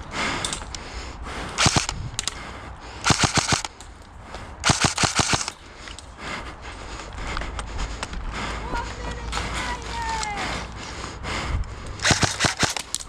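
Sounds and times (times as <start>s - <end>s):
airsoft gun bursts of sharp pops: 1.6s - 1.9s, 3.0s - 3.8s, 4.6s - 5.6s, 12.0s - 13.0s.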